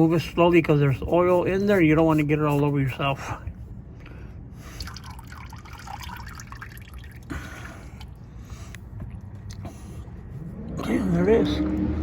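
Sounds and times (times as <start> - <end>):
oil dripping and trickling: 4.0 - 8.2.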